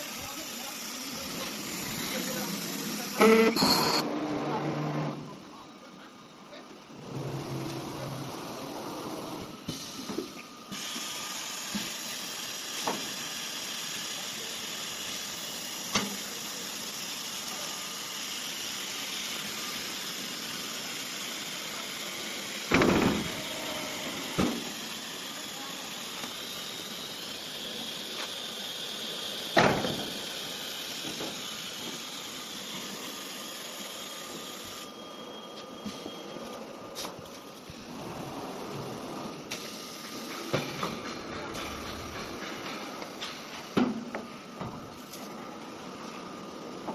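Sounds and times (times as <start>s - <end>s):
router spindle hissing: 0.0s - 4.0s, 8.7s - 35.0s.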